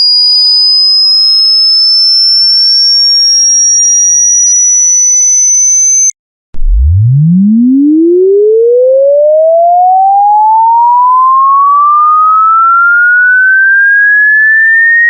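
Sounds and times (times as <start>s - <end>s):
high piercing electronic tone rising: 4.1s - 15.0s
lower electronic tone rising: 5.3s - 15.0s
deep tone climbing quickly: 6.6s - 9.6s.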